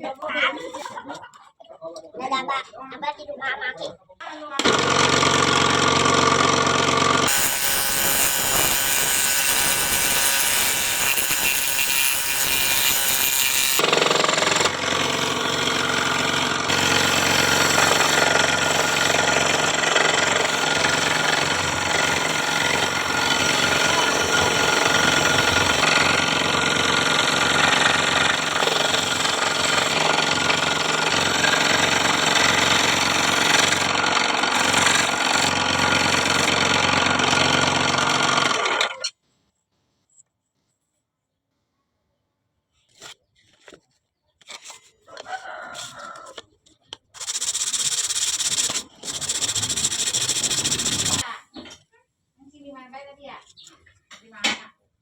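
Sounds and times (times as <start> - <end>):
power tool on wood: 4.6 - 39.0, 47.2 - 51.2.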